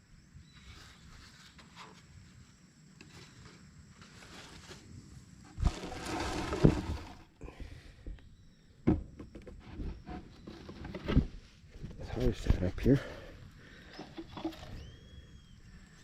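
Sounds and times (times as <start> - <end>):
rustling and scraping: 0.5 - 7.4, 9.1 - 15.0
thumps: 5.6 - 8.2.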